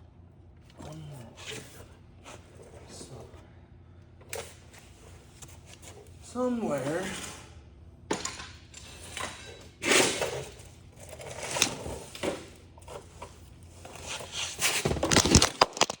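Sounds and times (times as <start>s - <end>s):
handling rustling and scraping: 8.7s - 16.0s.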